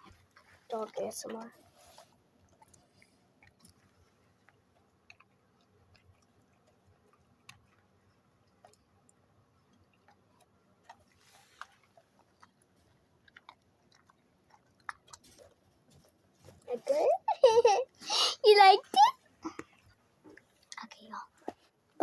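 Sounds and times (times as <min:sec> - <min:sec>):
dog chewing with crunches: 0:00.0 - 0:17.2.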